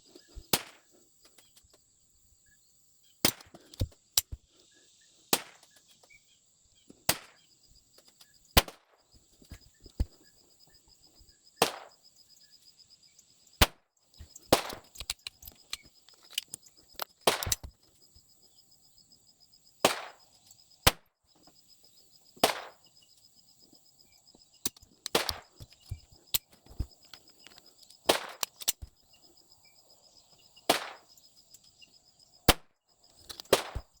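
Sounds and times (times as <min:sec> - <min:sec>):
pistol shots with echo: 0:25.1 - 0:25.5.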